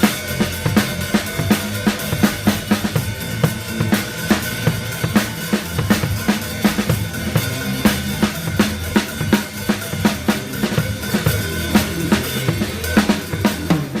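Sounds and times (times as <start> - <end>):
band playing live: 0.0 - 14.0
cymbals: 0.0 - 14.0.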